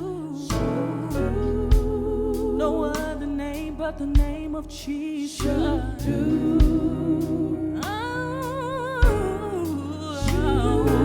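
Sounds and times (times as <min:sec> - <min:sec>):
bass: 0:00.0 - 0:11.0
person singing with vibrato: 0:00.0 - 0:11.0
keyboard chords: 0:05.4 - 0:11.0
drum hits: 0:06.6 - 0:07.0, 0:09.0 - 0:09.6.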